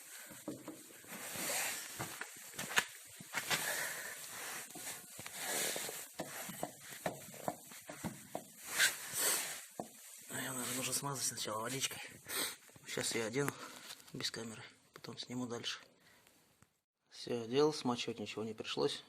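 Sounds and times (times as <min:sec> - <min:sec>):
rustling and scraping of parts: 0:00.0 - 0:12.0.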